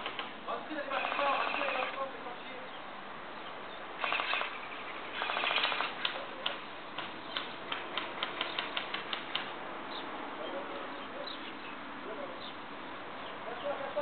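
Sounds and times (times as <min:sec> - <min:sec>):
airsoft gun shots: 0:04.0 - 0:06.6
faint bird chirps: 0:09.9 - 0:12.6.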